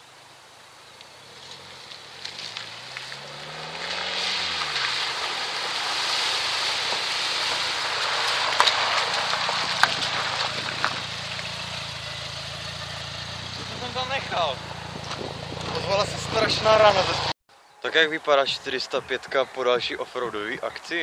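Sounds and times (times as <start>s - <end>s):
car engine revving: 1.2s - 17.4s
tyres hissing on wet surface: 2.4s - 10.5s.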